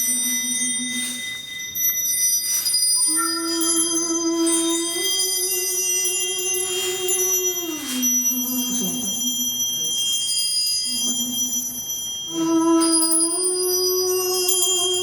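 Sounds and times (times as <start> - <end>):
slow music with held notes: 0.0 - 9.9
high ringing bell tones: 0.0 - 15.0.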